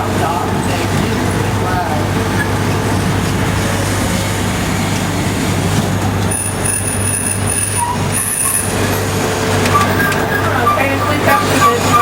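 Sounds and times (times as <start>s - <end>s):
train rumbling along: 0.0s - 12.0s
high wheel squeal: 6.3s - 12.0s.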